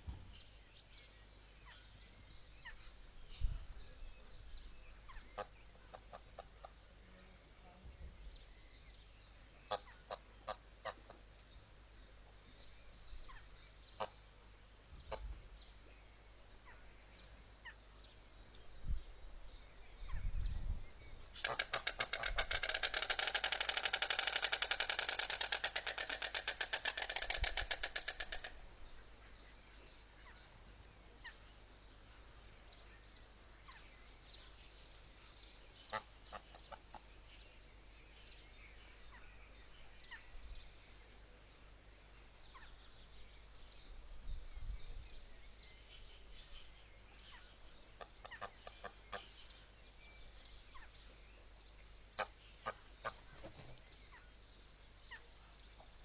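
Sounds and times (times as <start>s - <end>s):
stork bill clattering: 21.5s - 28.6s.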